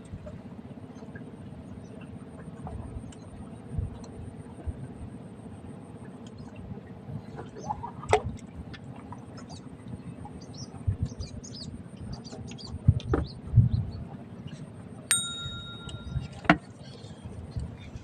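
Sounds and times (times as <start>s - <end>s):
steady low rumble: 0.0s - 16.5s
steady high tone: 15.1s - 16.5s.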